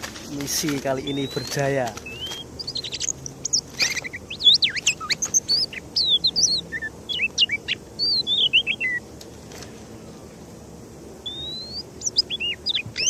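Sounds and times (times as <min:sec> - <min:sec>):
bird singing whistled notes: 0:01.0 - 0:09.0, 0:11.2 - 0:13.0.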